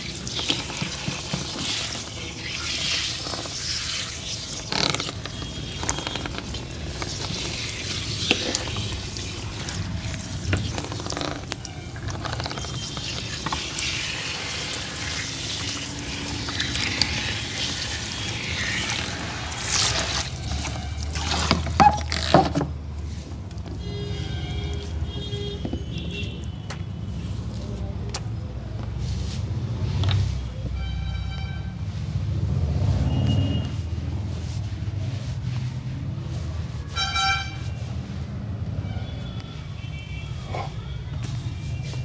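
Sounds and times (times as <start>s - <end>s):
water pouring and splashing: 0.0s - 23.6s
wet rubbing: 0.0s - 25.1s, 33.6s - 38.4s.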